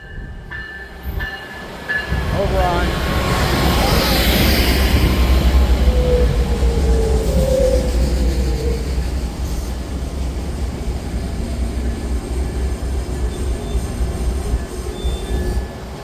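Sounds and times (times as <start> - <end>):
train rolling past: 0.0 - 16.0.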